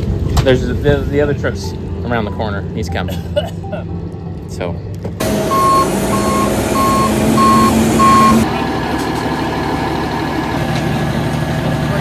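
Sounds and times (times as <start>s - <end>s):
truck engine running: 5.1s - 12.0s
reverse alarm beeping: 5.2s - 8.7s.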